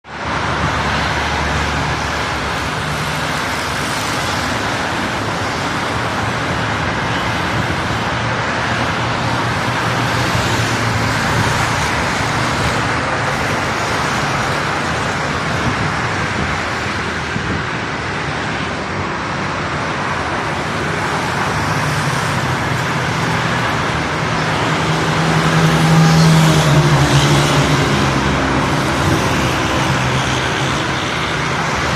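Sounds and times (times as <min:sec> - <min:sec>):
road traffic: 0:00.0 - 0:31.9.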